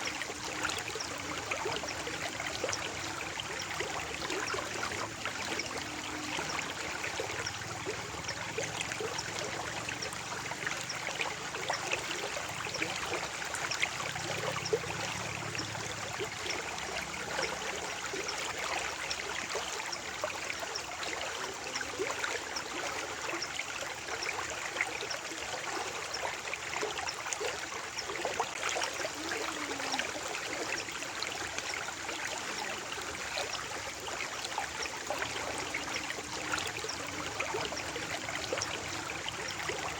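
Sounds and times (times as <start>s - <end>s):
stream babbling: 0.0s - 39.9s.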